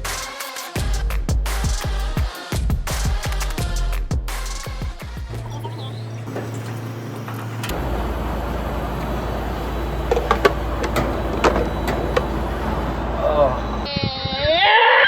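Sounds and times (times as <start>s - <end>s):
truck engine and road rumble: 5.3s - 13.9s.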